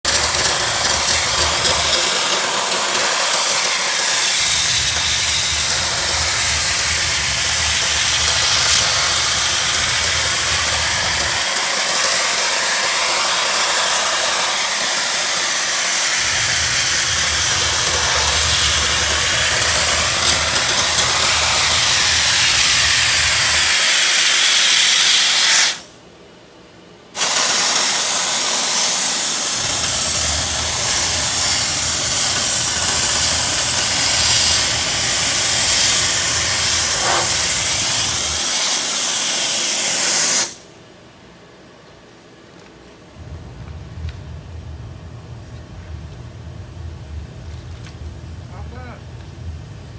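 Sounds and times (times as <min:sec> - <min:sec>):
steam jet hissing: 0:00.0 - 0:26.0, 0:27.2 - 0:40.8
low hum: 0:04.4 - 0:11.4, 0:16.2 - 0:23.6, 0:43.1 - 0:49.9.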